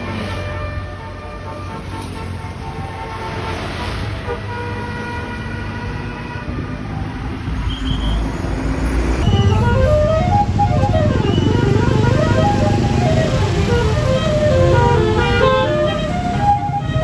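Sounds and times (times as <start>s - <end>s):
musical air horn: 0.0s - 6.8s, 9.2s - 17.0s
diesel engine running: 8.4s - 17.0s.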